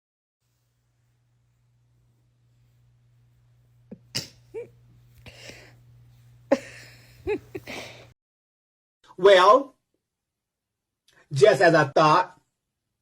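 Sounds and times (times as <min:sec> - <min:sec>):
low steady hum: 0:00.4 - 0:08.1.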